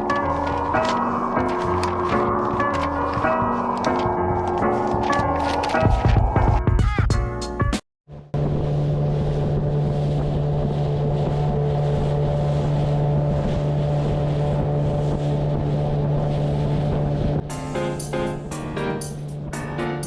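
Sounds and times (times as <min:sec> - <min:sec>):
music: 0:00.0 - 0:07.8, 0:15.6 - 0:20.0
outboard engine droning: 0:08.1 - 0:17.5.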